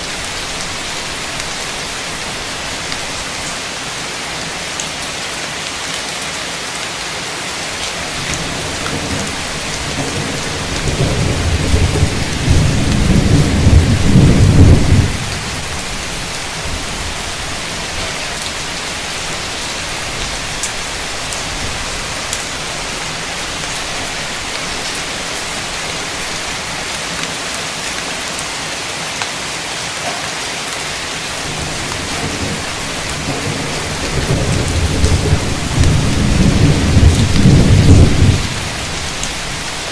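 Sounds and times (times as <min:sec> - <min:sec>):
heavy rain: 0:00.0 - 0:39.9
thunder rumbling: 0:08.0 - 0:26.6, 0:31.4 - 0:39.9.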